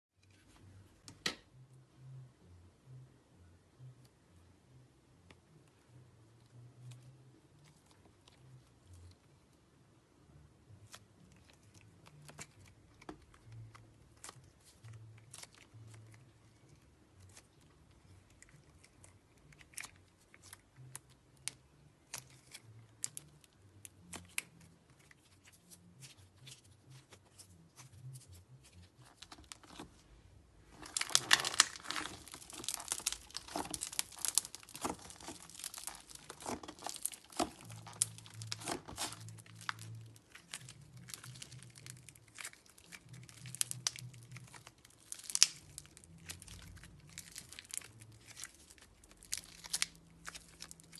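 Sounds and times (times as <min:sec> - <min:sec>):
slime squeezed and stretched: 0:30.7 - 0:50.9.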